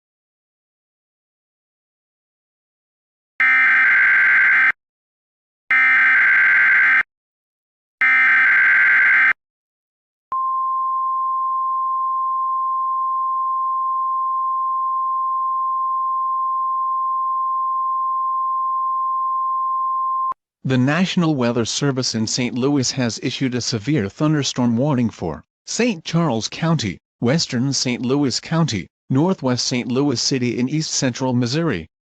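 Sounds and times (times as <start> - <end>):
steady single-pitch alarm tone: 3.4 - 4.8, 5.7 - 7.1, 8.0 - 9.4.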